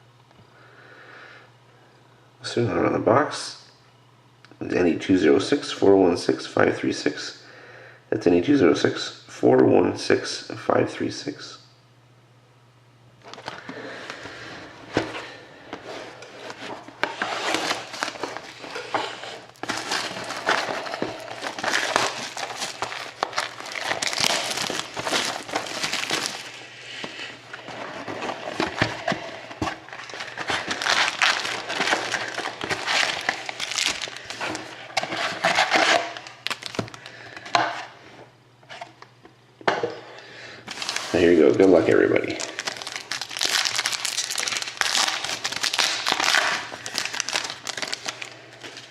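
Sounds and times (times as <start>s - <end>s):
plastic wrapping crinkling and tearing: 16.6s - 26.6s, 27.5s - 37.2s, 40.7s - 48.9s.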